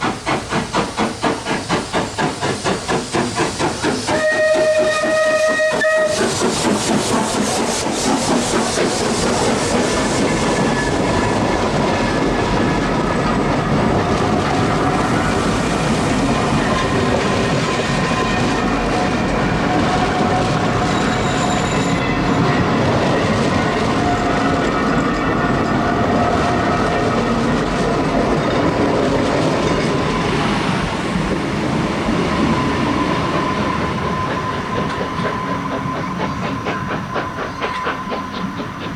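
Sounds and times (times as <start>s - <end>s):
coach wheels rattling over rail joints: 0.0s - 38.9s
steam locomotive exhaust beats: 0.0s - 38.9s
thin squealing tones: 20.6s - 22.7s.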